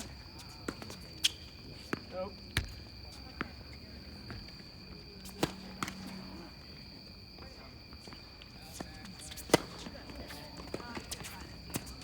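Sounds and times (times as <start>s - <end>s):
footsteps on court: 7.3s - 12.0s
tennis ball impacts: 9.4s - 9.9s.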